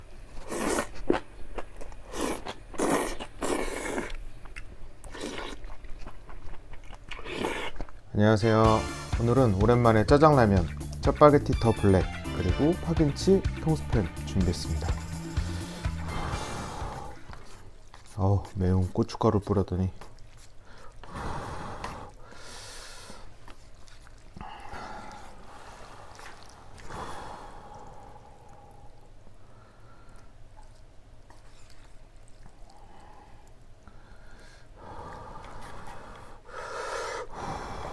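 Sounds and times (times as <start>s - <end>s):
noodle slurping and chewing: 0.2s - 8.1s, 8.9s - 13.0s, 13.6s - 29.2s, 29.9s - 34.1s, 34.7s - 37.9s
person sniffing and gasping: 15.4s - 17.7s, 34.8s - 37.9s.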